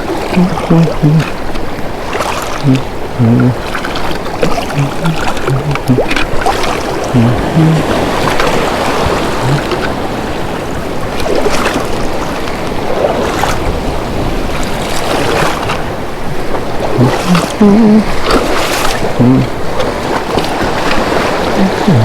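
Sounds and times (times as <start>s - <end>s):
ocean surf washing on shore: 0.0s - 22.0s
wind on microphone: 4.4s - 11.0s.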